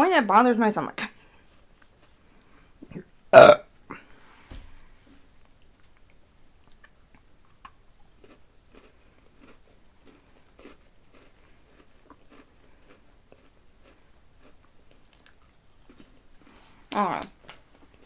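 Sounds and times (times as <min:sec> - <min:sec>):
crunchy cookie chewing: 0:05.4 - 0:18.0.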